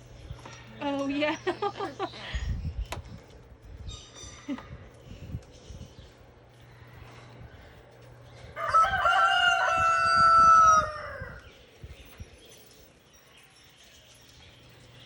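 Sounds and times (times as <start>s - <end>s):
rooster crowing: 8.6s - 11.4s.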